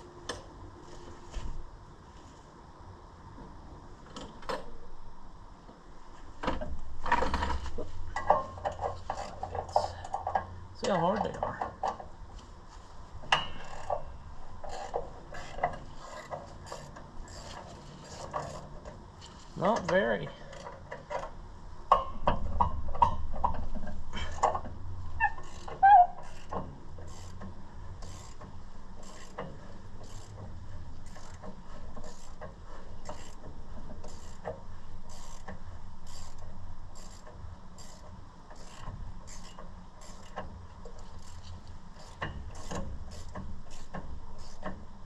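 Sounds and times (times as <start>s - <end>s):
ratchet wrench clicking: 13.6s - 14.0s, 14.6s - 18.7s, 25.2s - 30.4s, 31.0s - 44.8s.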